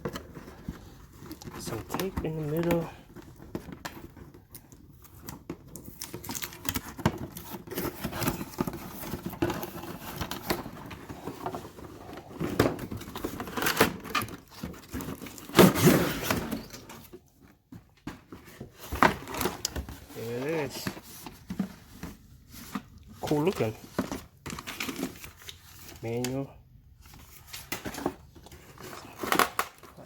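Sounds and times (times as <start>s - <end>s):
cardboard box scraping and rustling: 7.3s - 17.1s, 18.2s - 25.3s.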